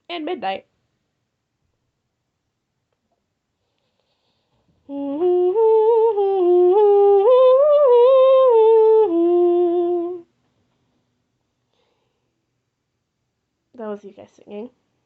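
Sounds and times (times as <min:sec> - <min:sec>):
woman humming: 0:04.8 - 0:10.2.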